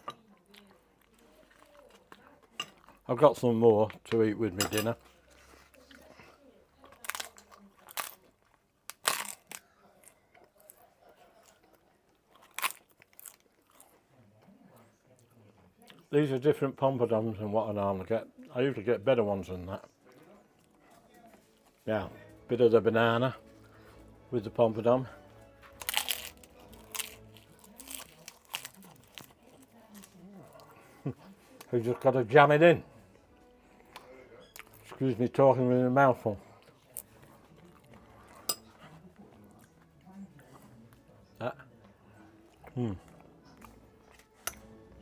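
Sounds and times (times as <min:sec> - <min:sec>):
soft chewing: 0:00.0 - 0:45.0
poppadoms crunching: 0:06.8 - 0:14.0, 0:24.8 - 0:32.2
poppadom crunching: 0:06.8 - 0:14.6, 0:19.4 - 0:45.0.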